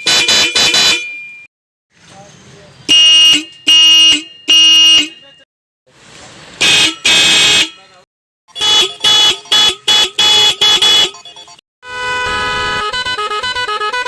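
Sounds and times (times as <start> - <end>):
motorcycle horn honks: 0.0 - 1.5, 2.9 - 5.4, 6.6 - 7.8, 8.5 - 14.0.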